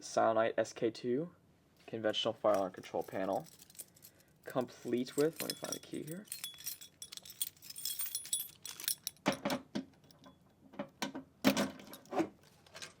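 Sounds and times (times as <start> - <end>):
keys jangling: 2.5 - 9.4.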